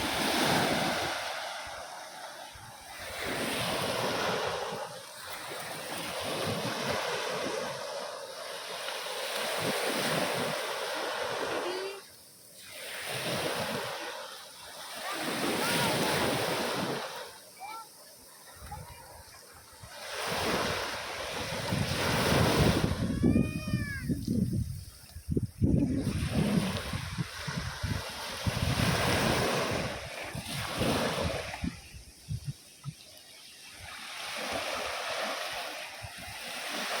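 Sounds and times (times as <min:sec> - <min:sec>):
sea waves breaking on shore: 0:00.0 - 0:37.0
wind buffeting microphone: 0:18.6 - 0:33.0.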